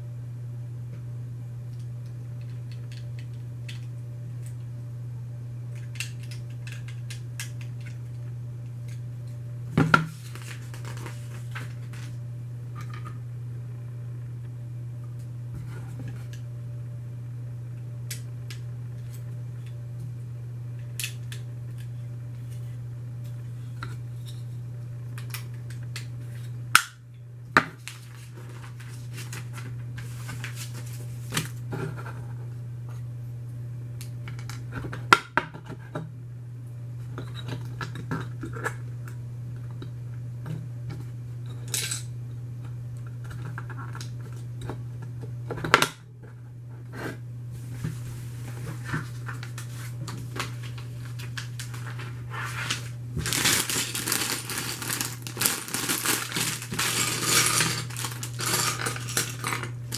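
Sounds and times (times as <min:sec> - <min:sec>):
steady low hum: 0:00.0 - 0:59.9
plastic pieces clicking and rattling: 0:53.2 - 0:59.7.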